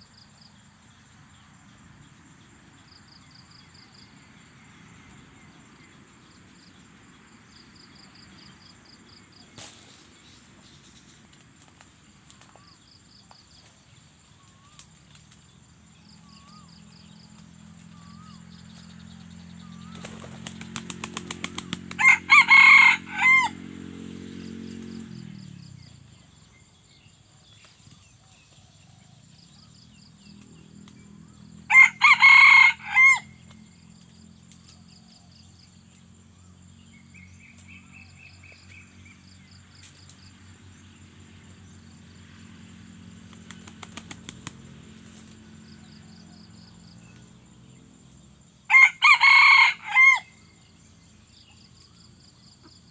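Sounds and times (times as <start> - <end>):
rooster crowing: 21.9 - 23.7, 31.7 - 33.6, 48.7 - 50.6
wing clapping: 43.3 - 44.6.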